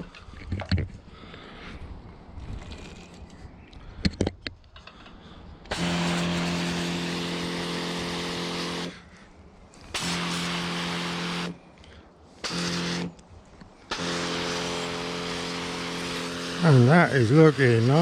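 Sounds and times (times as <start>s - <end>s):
water spray hissing: 5.7s - 9.0s, 9.8s - 11.6s, 12.4s - 13.1s, 13.9s - 18.0s
pressure washer pump humming: 5.7s - 9.1s, 9.8s - 18.0s.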